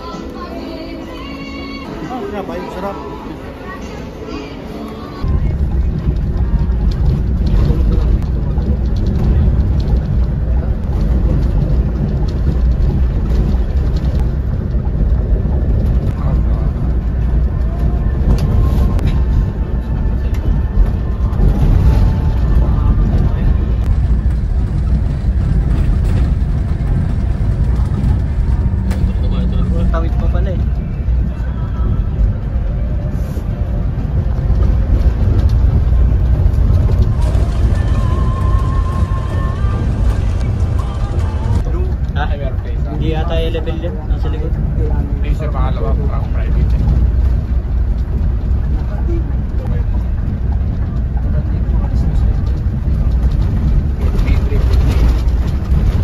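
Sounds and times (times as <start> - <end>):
bus engine and road rumble: 0.0 - 56.0.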